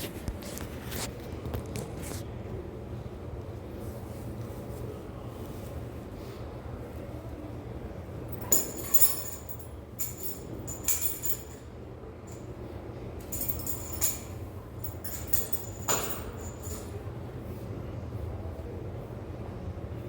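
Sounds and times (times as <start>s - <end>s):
fans humming: 0.0s - 20.0s
metallic clinks and jingles: 8.3s - 11.7s, 13.2s - 17.0s.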